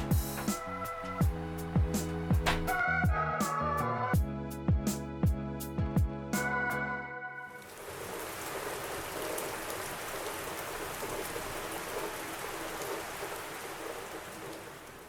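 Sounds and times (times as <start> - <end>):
steady rain hiss: 0.0 - 2.8, 7.5 - 15.0.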